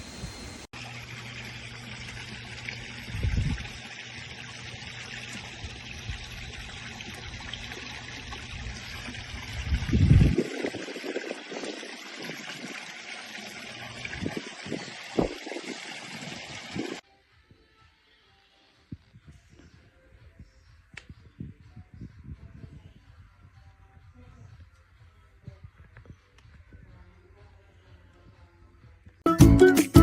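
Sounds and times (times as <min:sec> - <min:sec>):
water trickling and splashing: 0:00.7 - 0:17.0.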